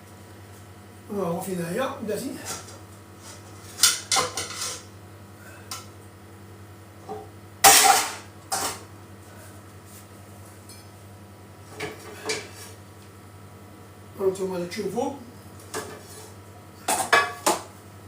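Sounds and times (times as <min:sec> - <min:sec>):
dishes and pans clattering: 0:03.7 - 0:04.8, 0:07.1 - 0:08.8, 0:16.8 - 0:17.7.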